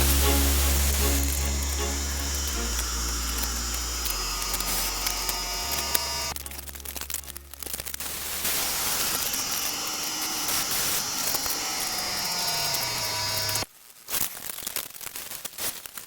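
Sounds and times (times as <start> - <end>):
rushing hiss: 0.0 - 6.8, 7.9 - 13.6.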